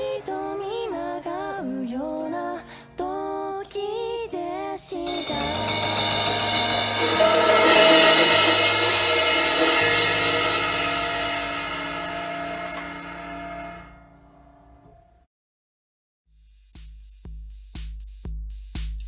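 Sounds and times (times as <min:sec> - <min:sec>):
pop-rock song with singing: 0:00.0 - 0:07.6
crash cymbals: 0:05.0 - 0:14.1.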